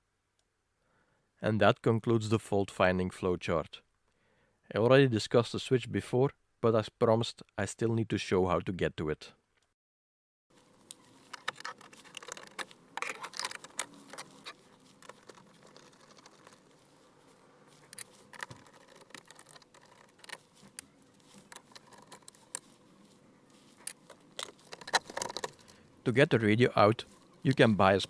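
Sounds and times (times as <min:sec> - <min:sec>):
plastic being handled: 0:10.5 - 0:28.0
hand tools clicking and tapping: 0:10.6 - 0:26.0, 0:26.9 - 0:28.0.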